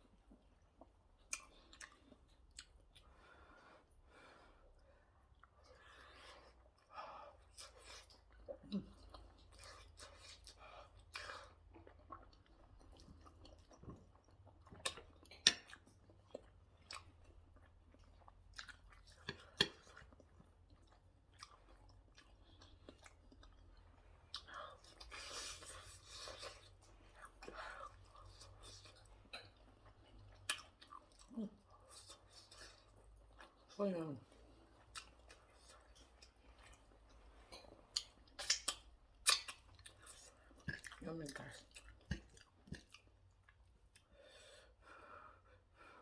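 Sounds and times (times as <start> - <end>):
person chewing food: 0.0 - 46.0
sharp mouth clicks: 38.0 - 39.6.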